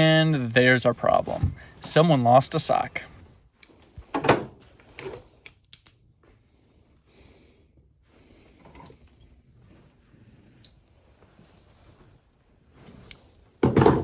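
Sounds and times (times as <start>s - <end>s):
quiet rustling: 8.0s - 13.6s.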